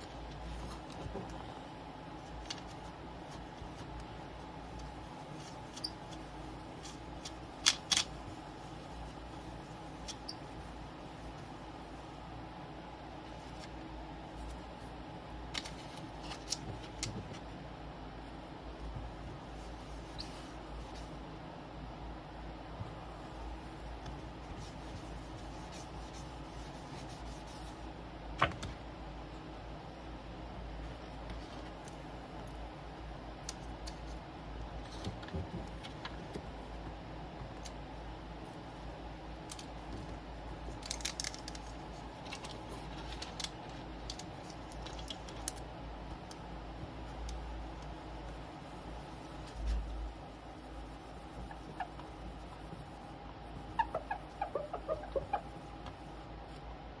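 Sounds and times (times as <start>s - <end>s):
faint steady hum: 0.0s - 57.0s
hands and tools scratching: 2.3s - 12.0s, 24.2s - 27.9s, 39.5s - 56.4s.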